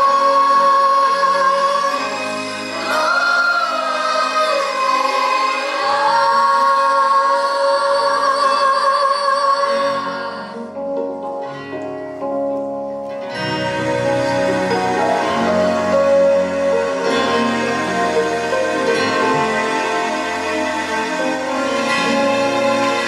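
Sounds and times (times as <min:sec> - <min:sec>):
children's choir singing: 0:00.0 - 0:10.8, 0:13.2 - 0:23.0
instrumental backing: 0:10.0 - 0:23.0.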